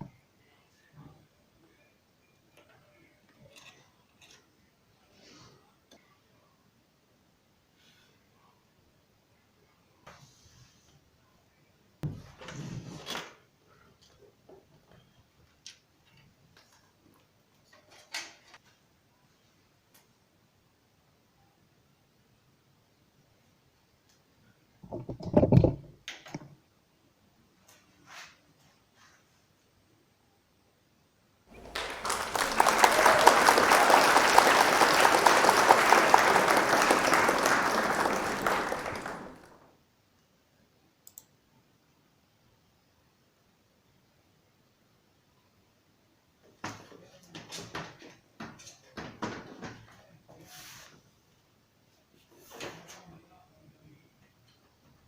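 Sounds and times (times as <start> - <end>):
crowd clapping: 31.5 - 39.6.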